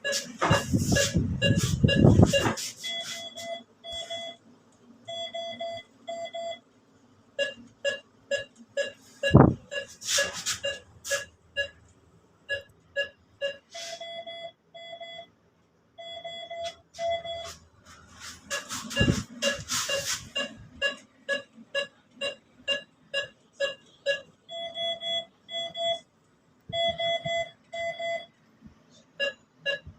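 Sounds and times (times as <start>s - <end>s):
scraping noises: 0.0s - 4.2s, 8.9s - 11.3s, 17.0s - 21.0s
electronic beeping: 0.0s - 4.4s, 7.4s - 11.8s, 16.0s - 26.1s, 29.2s - 29.9s.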